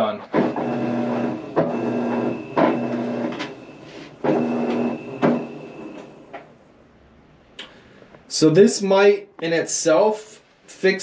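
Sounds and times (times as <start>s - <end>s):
washer motor humming: 0.3s - 6.6s.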